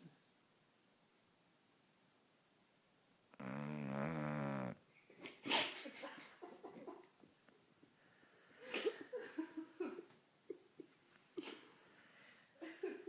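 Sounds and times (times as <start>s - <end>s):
dog whimpering: 3.4s - 4.8s.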